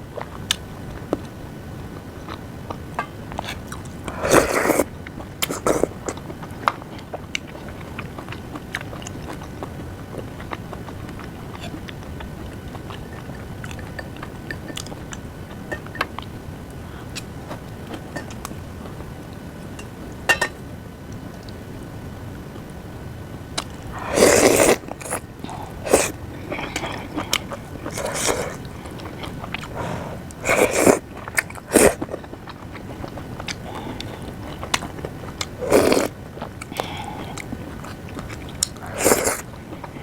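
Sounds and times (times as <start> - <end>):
person chewing and biting: 23.7 - 40.0.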